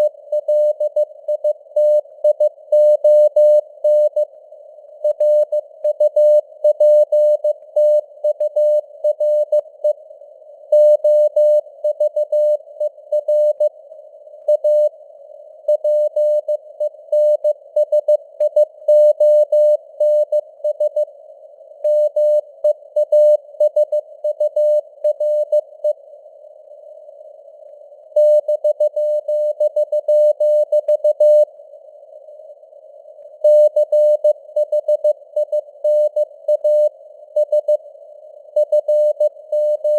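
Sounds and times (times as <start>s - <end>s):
faint radio noise hiss: 0.0s - 39.9s.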